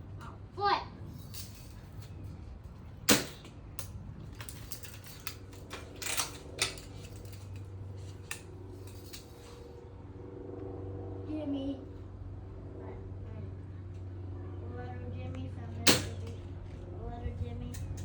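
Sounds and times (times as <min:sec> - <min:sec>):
bb gun firing crack: 0:03.1 - 0:03.5, 0:15.8 - 0:16.4.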